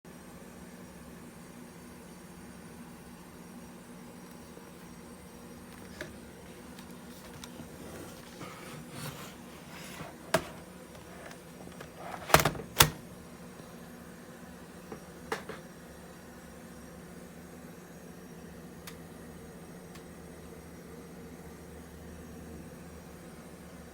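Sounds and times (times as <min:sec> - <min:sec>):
laptop clicks and knocks: 0:07.1 - 0:13.0.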